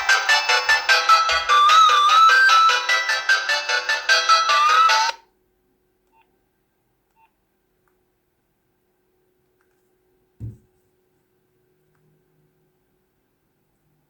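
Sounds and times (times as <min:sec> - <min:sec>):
phone ringtone melody: 0:00.0 - 0:05.2
low thump: 0:10.4 - 0:10.7.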